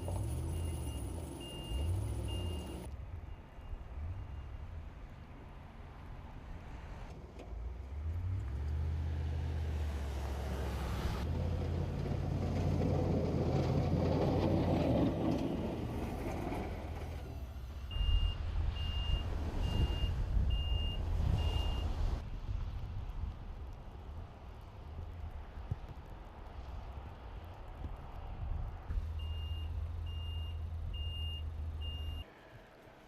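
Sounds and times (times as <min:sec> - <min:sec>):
vehicle engines running: 0:00.0 - 0:02.9
truck reversing alarm beeping: 0:00.0 - 0:04.6, 0:17.8 - 0:21.9, 0:29.1 - 0:32.2
vehicle passing: 0:08.0 - 0:17.3.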